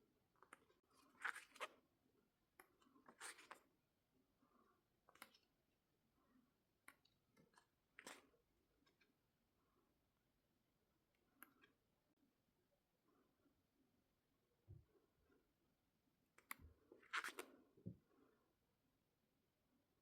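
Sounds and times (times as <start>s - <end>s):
paper pages turning: 1.0s - 1.7s, 17.1s - 17.6s.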